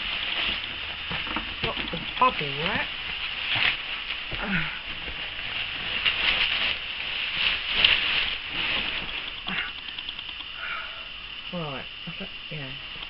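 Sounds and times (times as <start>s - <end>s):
bubble wrap crinkling: 0.0s - 9.6s.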